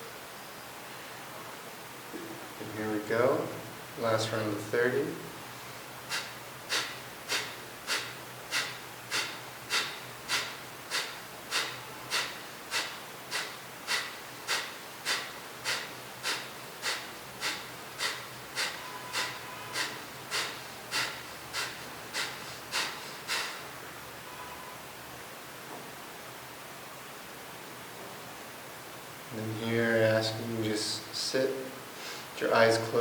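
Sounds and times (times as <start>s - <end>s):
man's forceful nasal exhalations: 5.5s - 23.8s, 32.0s - 32.4s.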